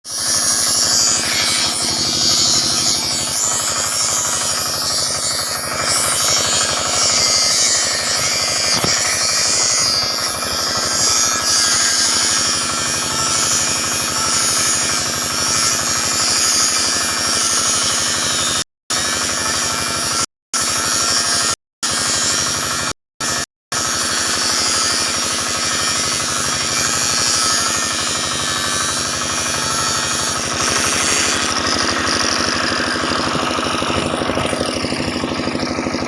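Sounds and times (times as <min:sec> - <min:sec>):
power tool cutting steel bars: 0:00.0 - 0:36.0.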